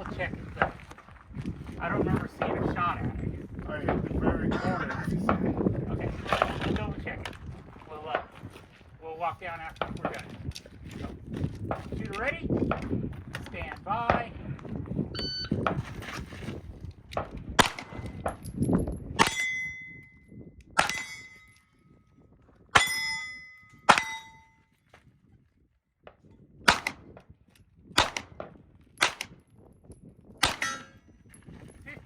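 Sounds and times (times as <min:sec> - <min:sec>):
shot timer beep: 0:15.2 - 0:15.6
pistol shots: 0:17.6 - 0:18.3, 0:20.8 - 0:21.3, 0:23.9 - 0:24.3, 0:26.7 - 0:27.1, 0:28.0 - 0:29.4, 0:30.4 - 0:30.9
bullet clanging on steel plate: 0:17.6 - 0:20.2, 0:20.8 - 0:21.7, 0:22.8 - 0:24.7, 0:30.4 - 0:31.5.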